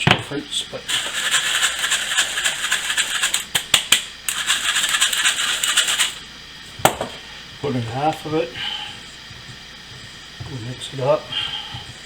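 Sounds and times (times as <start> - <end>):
flour sifter rattling and scraping: 0.9 - 6.2.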